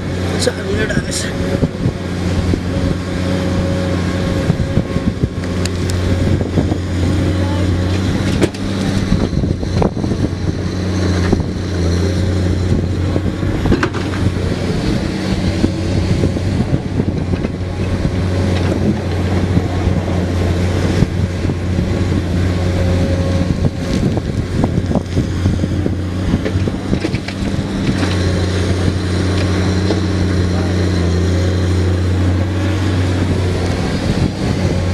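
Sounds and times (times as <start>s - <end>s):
excavator diesel engine droning: 0.0s - 34.9s
sharp knocks and clatter: 13.6s - 14.3s.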